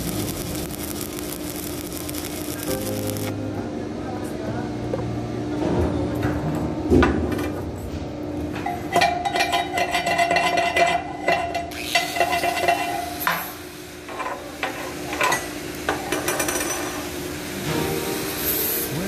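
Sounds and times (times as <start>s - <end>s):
welding arc crackling and sizzling: 0.0s - 3.4s, 8.8s - 19.0s.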